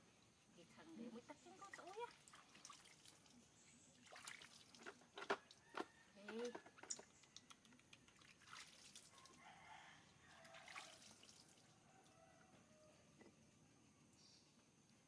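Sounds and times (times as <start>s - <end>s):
water dripping and trickling: 0.0s - 9.4s, 10.2s - 12.2s.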